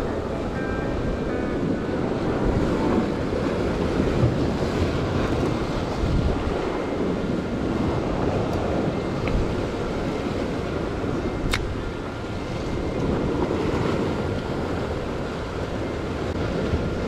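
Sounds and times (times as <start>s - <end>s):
waves washing against rocks: 0.0s - 17.0s
wind buffeting microphone: 0.0s - 17.0s.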